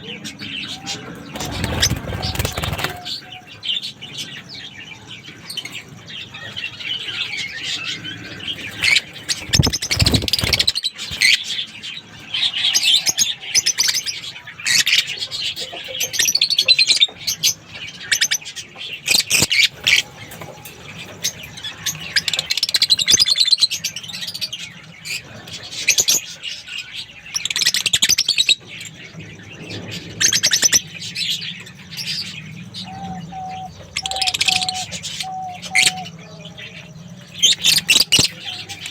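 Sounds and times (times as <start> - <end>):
lovebirds chirping: 0.7 - 11.8, 31.9 - 38.9.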